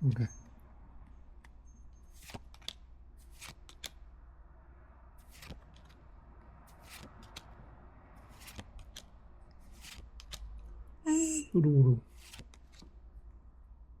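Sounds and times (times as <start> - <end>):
trading cards flicking and sliding: 1.4 - 4.1, 5.2 - 7.6, 8.2 - 10.7, 12.1 - 13.0.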